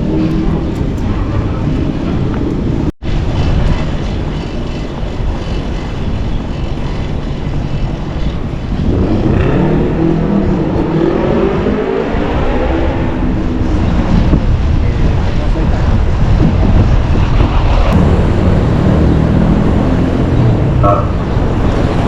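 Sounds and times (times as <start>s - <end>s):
city street traffic: 0.0s - 22.0s
vehicle passing close by: 8.7s - 14.3s, 17.2s - 22.0s.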